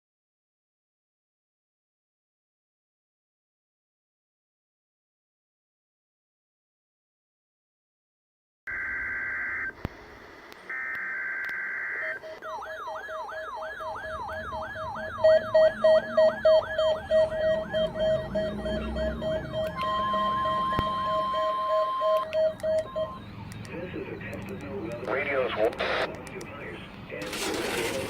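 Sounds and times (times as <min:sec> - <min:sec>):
electronic whooping alarm: 0:08.7 - 0:09.8, 0:10.7 - 0:23.7
steady warning alarm tone: 0:08.7 - 0:09.8, 0:10.7 - 0:24.3
pulsing beep: 0:15.1 - 0:24.3.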